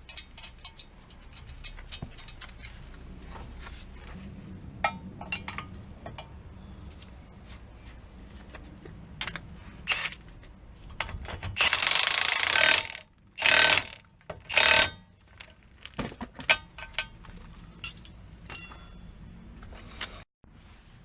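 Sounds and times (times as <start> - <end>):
power tool bursts: 11.6 - 14.9
metallic tool clinks: 17.8 - 19.4.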